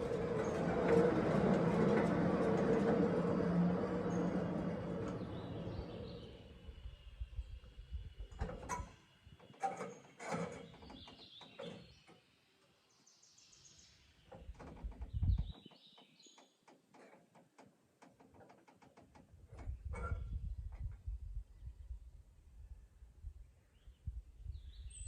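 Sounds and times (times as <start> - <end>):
low machine rumble: 0.0 - 8.6
faint birdsong: 3.7 - 16.8, 21.4 - 25.0.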